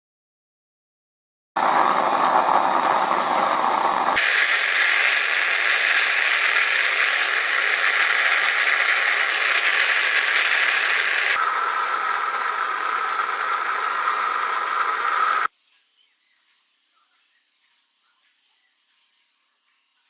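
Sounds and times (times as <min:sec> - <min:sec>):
steady rushing noise: 0:01.6 - 0:15.5.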